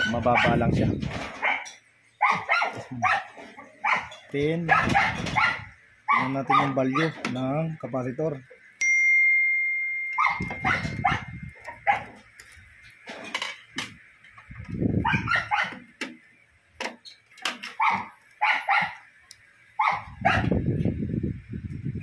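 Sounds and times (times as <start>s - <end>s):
dog barking: 0.0s - 0.6s, 1.4s - 7.2s, 10.2s - 12.2s, 15.0s - 15.8s, 17.8s - 19.0s, 19.8s - 20.6s.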